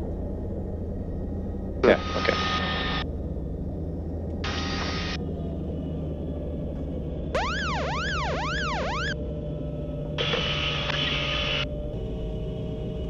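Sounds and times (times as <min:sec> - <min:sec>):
low cockpit rumble: 0:00.0 - 0:12.0
warbling alert tone: 0:07.4 - 0:09.2.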